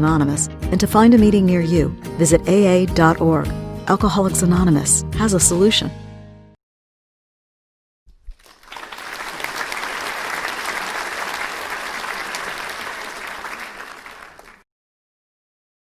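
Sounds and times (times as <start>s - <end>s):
audience applauding: 8.3s - 14.6s.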